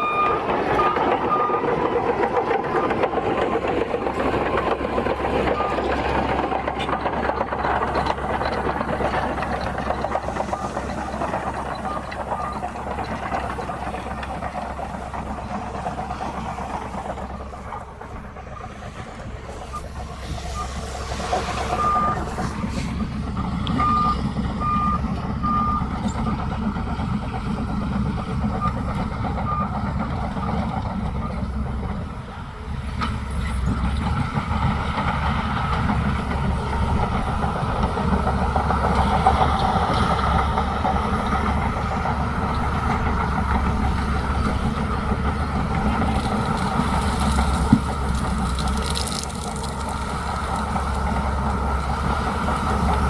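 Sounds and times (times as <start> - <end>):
reversing alarm beeping: 0.0 - 3.5, 9.3 - 13.0, 19.6 - 22.6, 23.7 - 26.5
bulldozer diesel engine: 0.0 - 53.0.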